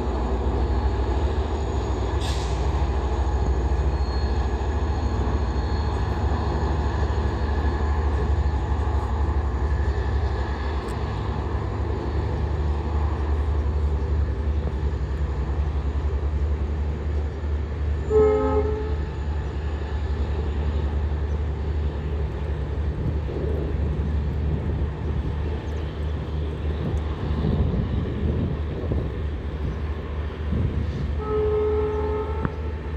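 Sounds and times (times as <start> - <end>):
diesel locomotive engine throbbing: 0.0 - 32.9
moving train rumble: 0.0 - 32.9
locomotive horn blast: 18.0 - 19.2, 30.9 - 32.9.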